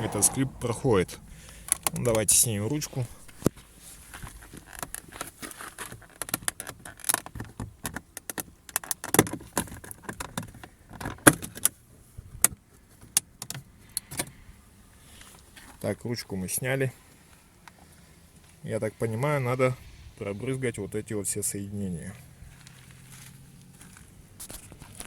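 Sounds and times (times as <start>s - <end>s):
plastic and metal clicks and rattles: 4.4s - 11.7s.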